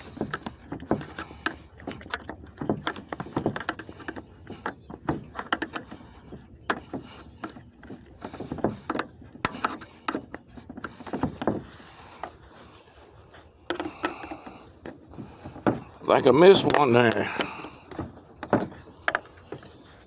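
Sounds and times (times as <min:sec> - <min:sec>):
chisel clicking on metal: 0:00.0 - 0:11.4, 0:13.7 - 0:16.0.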